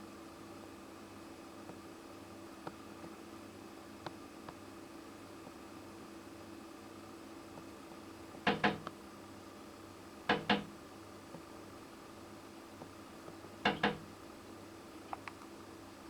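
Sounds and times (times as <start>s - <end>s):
bird beak tapping on glass: 8.5s - 8.9s, 10.3s - 10.7s, 13.7s - 14.0s.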